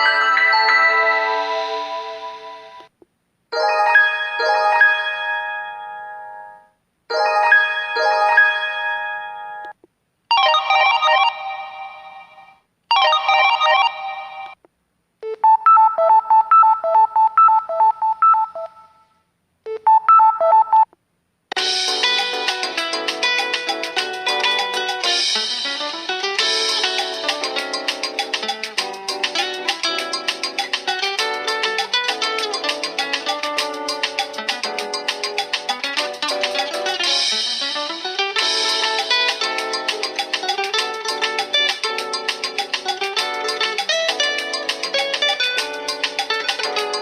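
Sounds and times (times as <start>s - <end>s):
mobile phone ringtone melodies: 0.0s - 2.9s, 3.5s - 14.6s, 15.3s - 19.1s, 19.7s - 20.9s.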